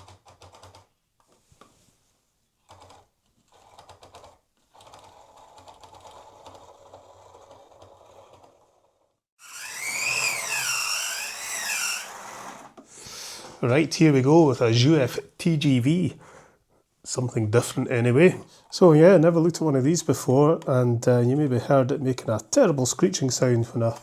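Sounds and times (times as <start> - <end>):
loud wavering screech: 9.4 - 12.7
model train motor running: 9.4 - 12.8.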